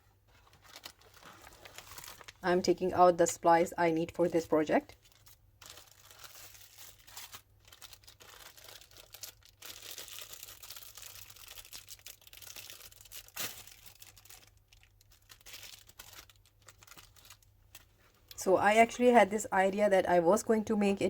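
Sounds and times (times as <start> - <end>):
packaging rustling and crinkling: 0.2 - 2.4, 4.9 - 18.4.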